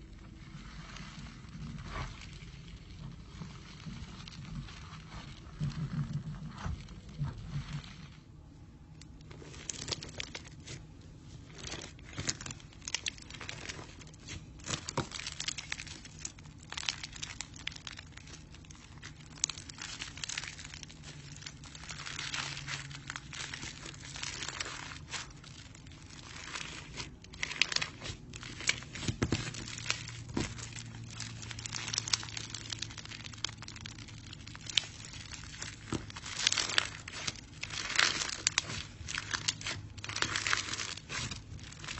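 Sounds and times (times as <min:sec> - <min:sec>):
crunchy slime crackling: 0:00.0 - 0:41.9.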